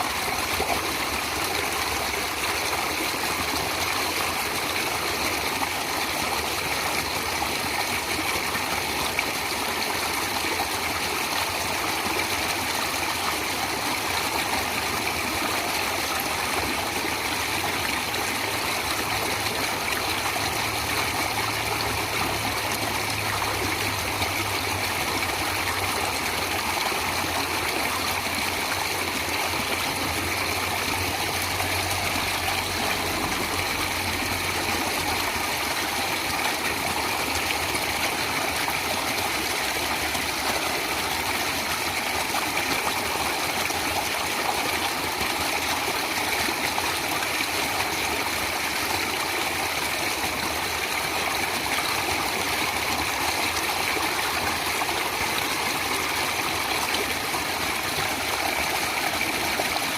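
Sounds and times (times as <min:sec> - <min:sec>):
stream water rushing: 0:00.0 - 0:59.9.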